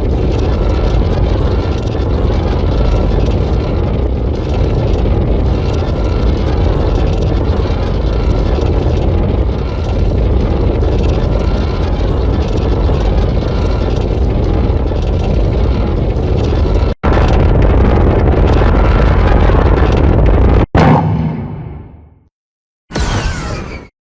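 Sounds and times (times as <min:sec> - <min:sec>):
heavy rumbling monster noise: 0:00.0 - 0:22.2, 0:22.9 - 0:23.9.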